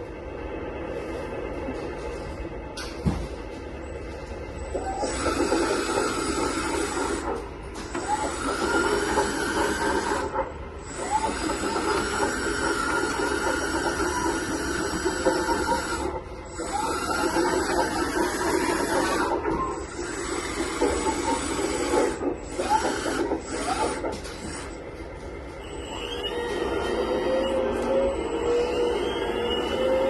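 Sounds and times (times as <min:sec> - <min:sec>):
toy bulldozer motor whining: 0:04.7 - 0:07.2, 0:07.8 - 0:24.8.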